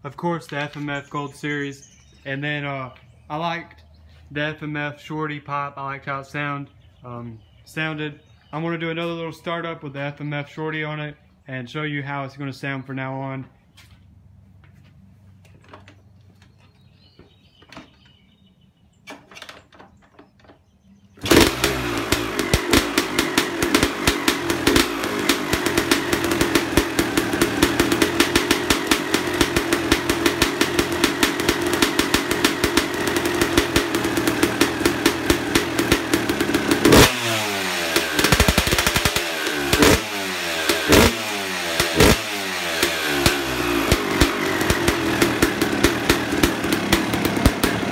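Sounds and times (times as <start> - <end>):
two-stroke motorcycle engine revving: 21.2 - 47.9.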